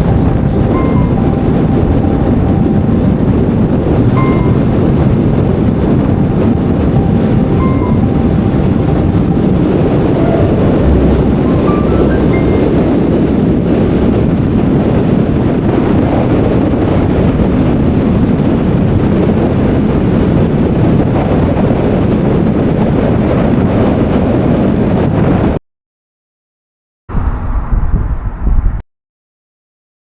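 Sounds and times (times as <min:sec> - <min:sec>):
car road and wind noise: 0:00.0 - 0:25.6, 0:27.1 - 0:28.8.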